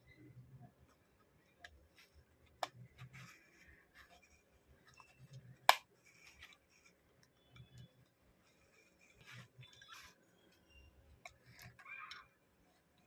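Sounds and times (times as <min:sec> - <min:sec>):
small plastic clicks: 0:11.1 - 0:13.0.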